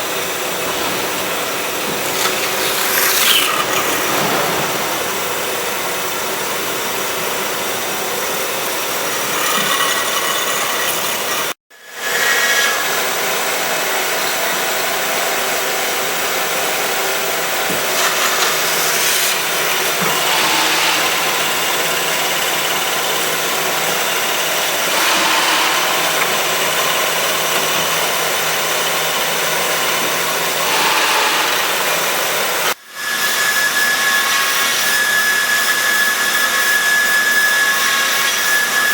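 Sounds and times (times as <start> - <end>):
band saw cutting metal: 0.0 - 38.9.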